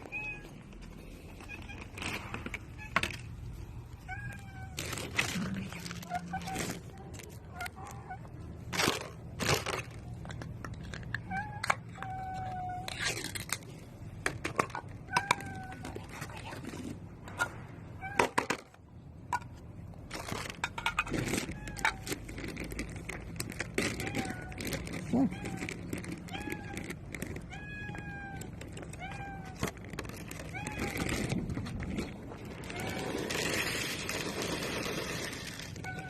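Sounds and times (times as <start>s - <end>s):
cat meowing: 0.0s - 3.3s, 3.9s - 8.5s, 23.7s - 33.6s, 35.5s - 36.0s.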